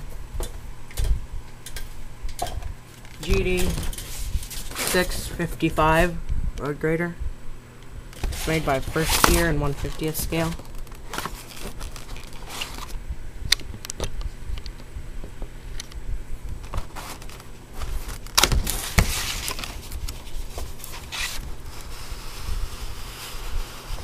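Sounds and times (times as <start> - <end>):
packaging rustling and crinkling: 8.2 - 13.0, 16.5 - 24.0.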